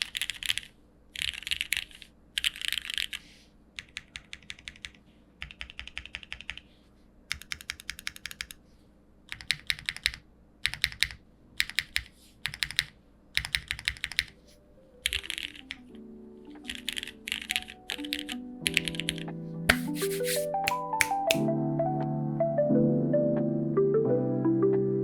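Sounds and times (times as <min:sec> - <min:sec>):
mechanical keyboard typing: 0:00.0 - 0:03.2, 0:03.8 - 0:06.7, 0:07.3 - 0:08.6, 0:09.3 - 0:14.4, 0:15.0 - 0:15.9, 0:16.6 - 0:21.4.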